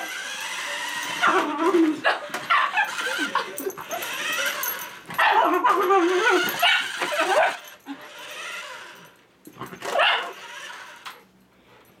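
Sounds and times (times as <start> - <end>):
dog crying: 0.6 - 8.2.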